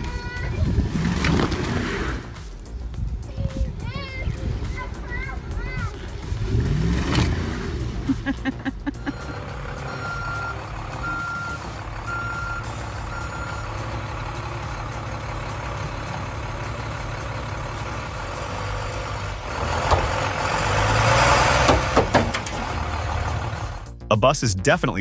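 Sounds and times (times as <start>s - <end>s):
heavy vehicle engine running: 0.0s - 24.0s
reversing alarm beeps: 9.0s - 13.7s.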